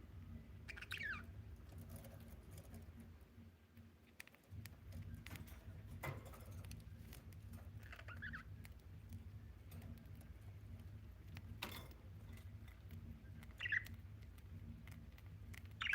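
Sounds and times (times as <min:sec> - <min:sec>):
low steady hum: 0:00.0 - 0:15.9
budgerigar chirping softly: 0:00.5 - 0:01.5, 0:07.8 - 0:09.5, 0:12.9 - 0:15.9
light clicks and scratches: 0:01.6 - 0:15.9.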